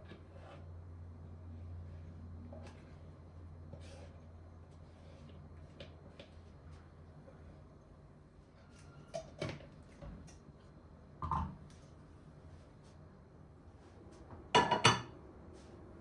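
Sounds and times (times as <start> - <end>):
dishes and utensils clinking: 14.6 - 15.2.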